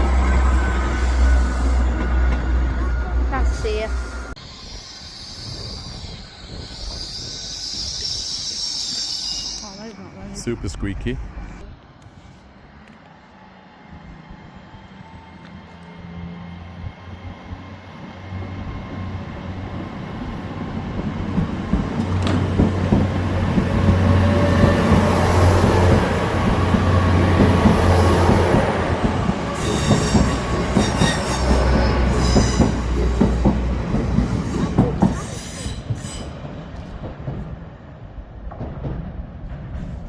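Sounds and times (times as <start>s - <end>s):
wheels squealing: 0.0s - 10.3s, 29.4s - 33.5s
train wheels clattering: 21.2s - 37.6s.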